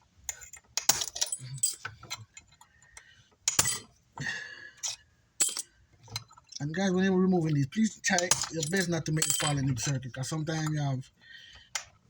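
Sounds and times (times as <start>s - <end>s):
metal tools clicking on metal parts: 0.3s - 3.9s, 4.8s - 6.6s, 7.4s - 10.8s.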